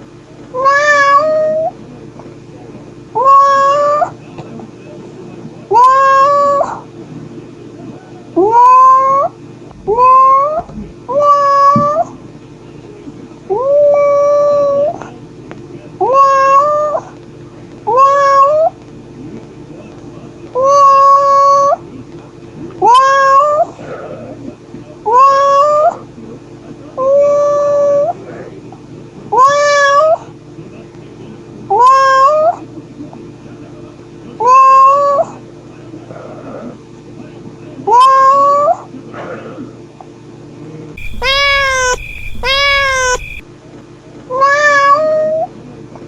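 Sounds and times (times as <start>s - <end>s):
cat meowing: 41.0s - 43.4s.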